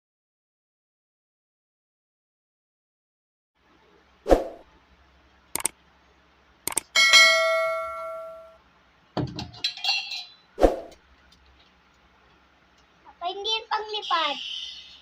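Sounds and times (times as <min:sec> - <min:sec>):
ringing metallic clang: 0:07.0 - 0:08.6.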